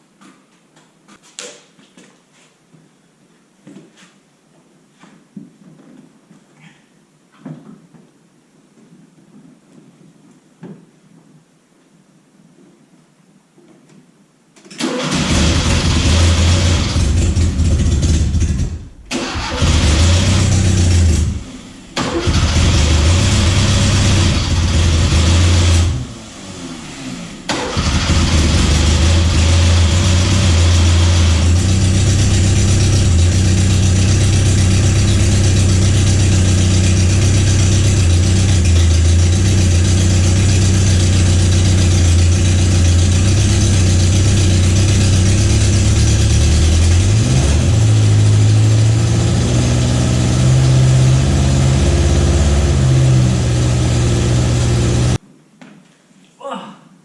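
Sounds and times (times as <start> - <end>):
car engine starting and running: 14.8 - 55.2.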